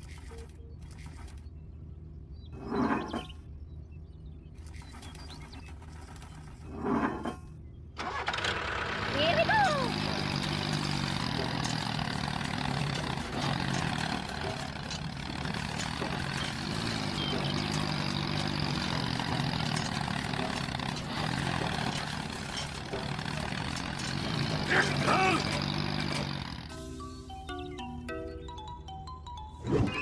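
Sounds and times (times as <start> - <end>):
tractor engine running: 7.6 - 30.0.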